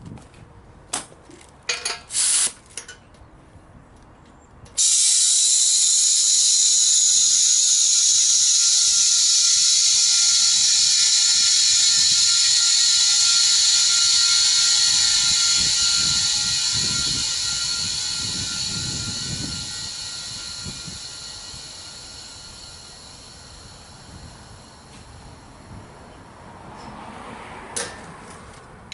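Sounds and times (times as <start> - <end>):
compressed air hissing: 2.1 - 2.6, 4.8 - 26.0.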